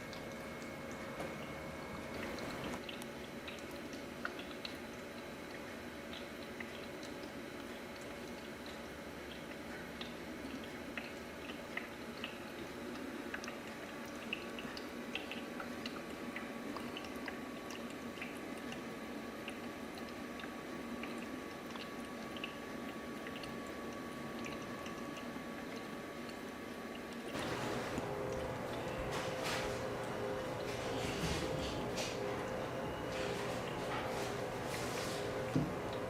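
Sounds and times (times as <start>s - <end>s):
tiny watery pops and ticks: 0.0s - 27.4s
humidifier hissing: 27.3s - 36.0s.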